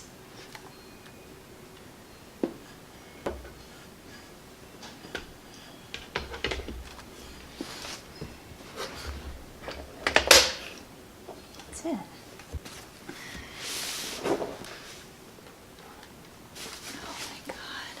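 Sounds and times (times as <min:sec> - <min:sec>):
plastic parts knocking and clicking: 0:05.9 - 0:07.1, 0:08.2 - 0:11.4.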